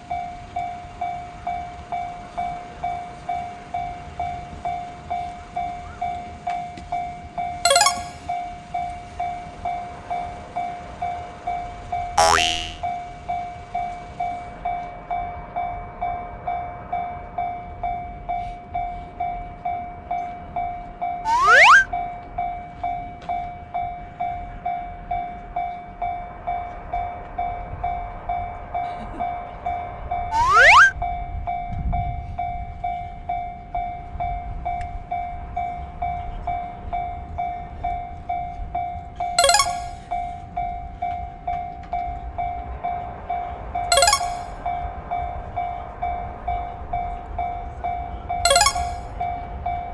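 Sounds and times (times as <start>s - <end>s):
level crossing bell ringing: 7.7s - 8.3s, 39.4s - 40.0s, 43.9s - 44.5s, 48.5s - 49.0s.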